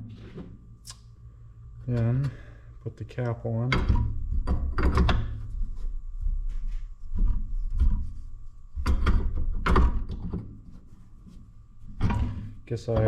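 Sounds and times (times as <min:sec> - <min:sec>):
metal parts knocking and clunking: 0:03.2 - 0:05.6, 0:08.8 - 0:10.6, 0:11.8 - 0:13.0.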